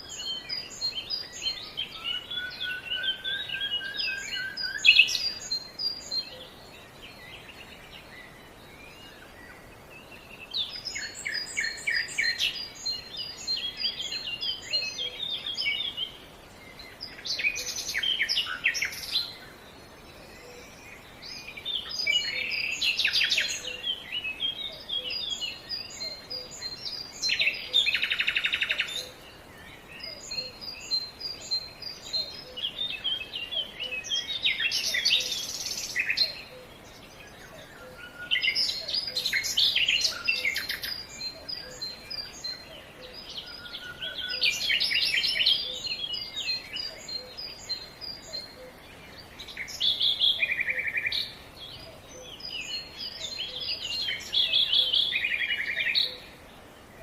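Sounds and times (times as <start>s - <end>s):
songbirds singing: 0.0s - 57.0s.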